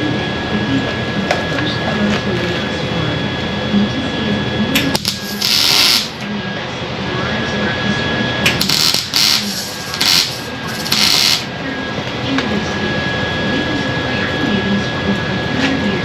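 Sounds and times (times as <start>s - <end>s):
steady shop hum: 0.0s - 16.0s
welder arcing on sheet steel: 4.9s - 6.2s, 8.5s - 11.5s.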